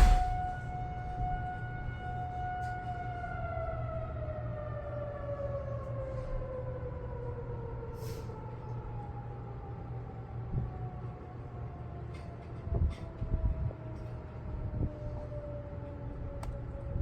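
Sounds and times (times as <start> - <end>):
steady low rumble: 0.0 - 1.3
warning siren winding down: 0.0 - 17.0.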